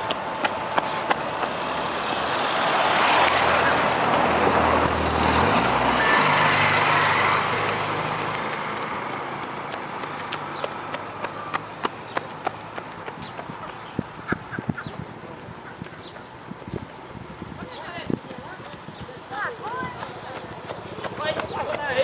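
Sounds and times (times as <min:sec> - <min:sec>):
vehicle driving past: 0:00.0 - 0:13.3.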